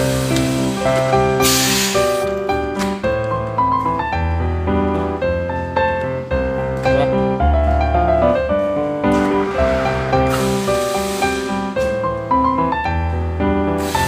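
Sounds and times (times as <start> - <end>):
piano background music: 0.0 - 14.0
sustained bass: 7.0 - 12.4.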